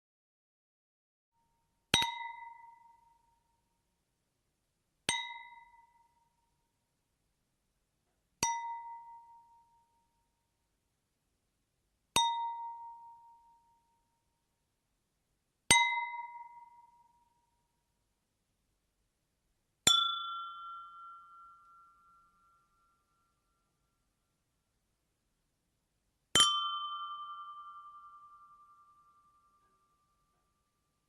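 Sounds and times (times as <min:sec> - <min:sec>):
glass ding: 0:02.0 - 0:03.3, 0:05.1 - 0:06.2, 0:19.9 - 0:23.4, 0:26.4 - 0:30.9.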